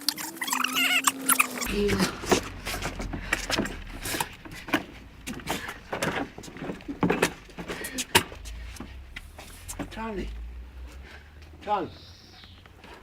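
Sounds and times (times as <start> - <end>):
low rumble: 1.6 - 11.6.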